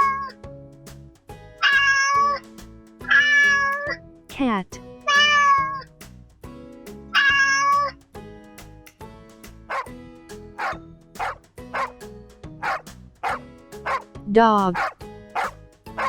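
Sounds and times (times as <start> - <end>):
cat meowing: 0.0 - 0.3, 1.6 - 2.4, 3.1 - 4.0, 5.1 - 5.9, 7.1 - 8.0
background music: 0.0 - 16.0
dog barking: 9.7 - 9.9, 10.6 - 12.0, 12.6 - 14.0, 14.8 - 16.0.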